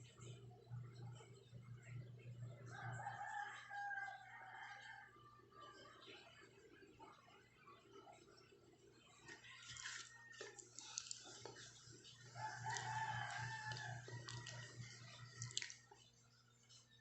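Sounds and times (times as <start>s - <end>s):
rooster crowing: 2.7s - 5.4s, 12.2s - 15.7s.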